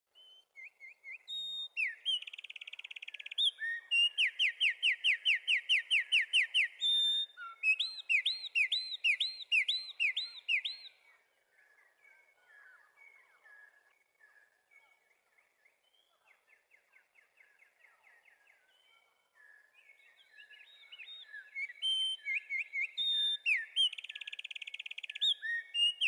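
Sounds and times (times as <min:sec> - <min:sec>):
faint bird chirps: 0:00.1 - 0:26.0
wren singing: 0:00.6 - 0:11.8, 0:19.8 - 0:26.0.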